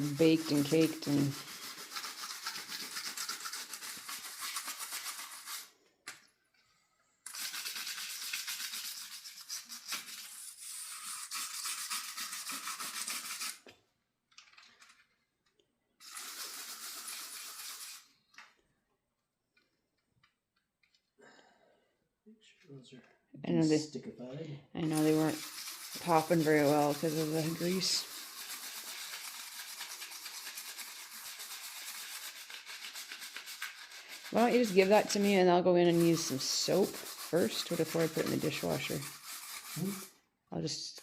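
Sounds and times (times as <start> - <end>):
scrubbing a greasy grate: 0.0 - 5.7, 7.3 - 13.6, 16.0 - 18.1, 24.9 - 40.2.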